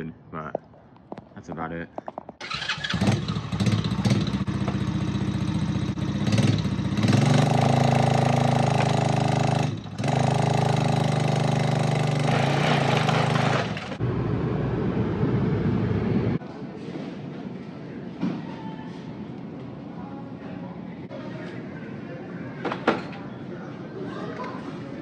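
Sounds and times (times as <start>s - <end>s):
small atv engine revving: 2.4s - 14.0s.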